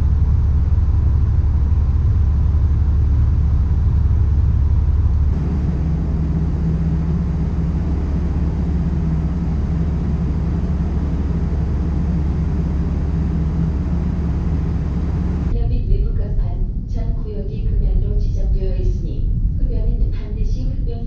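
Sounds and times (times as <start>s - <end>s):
motorcycle engine drone: 0.0s - 15.6s.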